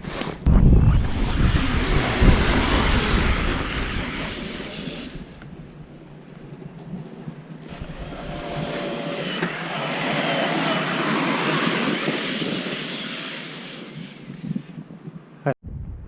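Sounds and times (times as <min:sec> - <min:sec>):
tyres churning snow: 0:00.0 - 0:06.7, 0:07.6 - 0:15.0
electric motor whine: 0:00.5 - 0:05.6, 0:07.6 - 0:14.8.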